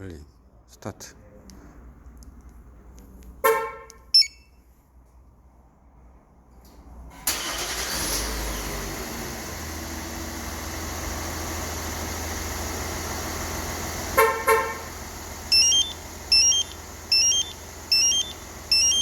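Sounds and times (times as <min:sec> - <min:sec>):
short double beep: 0:04.2 - 0:04.6, 0:15.5 - 0:19.0
car engine starting and idling: 0:06.6 - 0:19.0.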